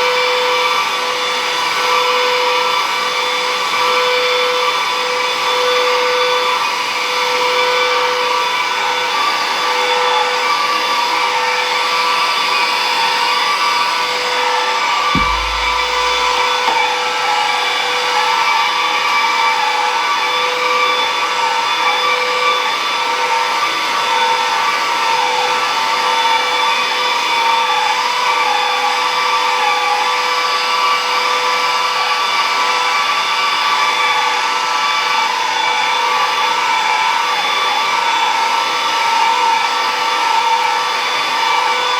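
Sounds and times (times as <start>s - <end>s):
brief low thump: 15.2s - 16.9s.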